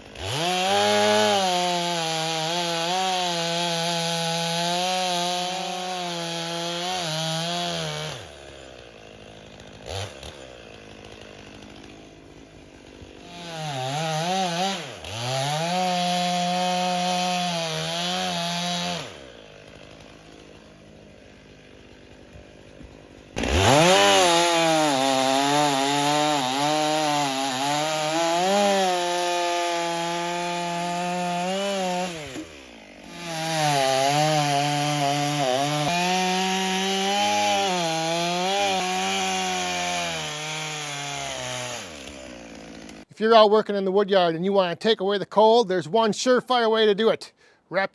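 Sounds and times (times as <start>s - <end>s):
chainsaw cutting logs: 0.0s - 45.0s.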